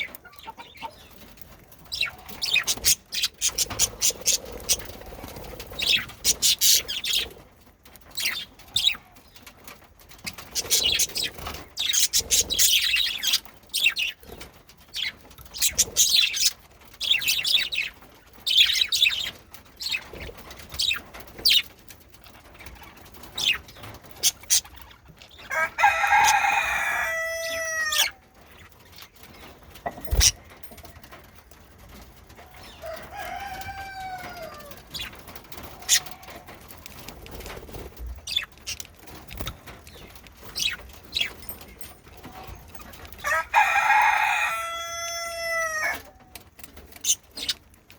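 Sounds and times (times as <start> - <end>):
budgerigars chirping: 1.9 - 4.9, 5.7 - 7.3, 10.3 - 14.2.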